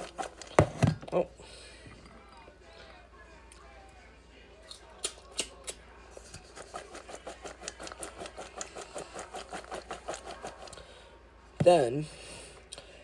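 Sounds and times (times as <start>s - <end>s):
popcorn rattling in a container: 0.0s - 0.6s, 6.2s - 10.8s.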